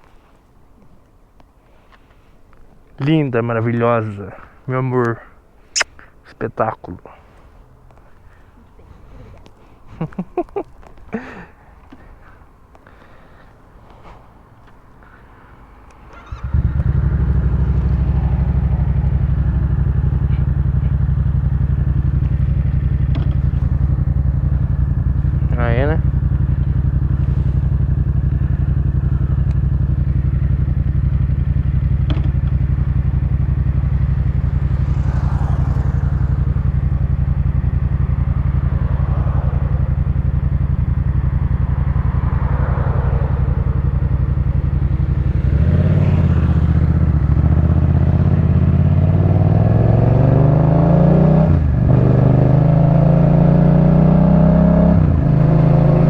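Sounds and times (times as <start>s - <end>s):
motorcycle accelerating: 14.3s - 56.0s
motorcycle engine running: 16.1s - 56.0s.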